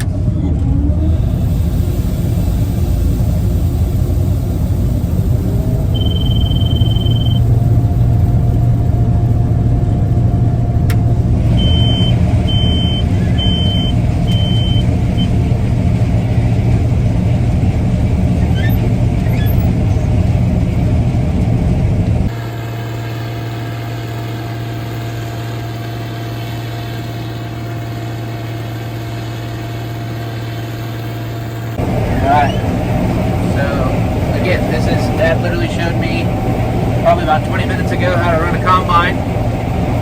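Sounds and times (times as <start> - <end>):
combine harvester engine rumble: 0.0 - 40.0
high electronic beep: 5.9 - 7.6, 11.6 - 15.3
short beeps: 5.9 - 7.6, 11.6 - 15.3.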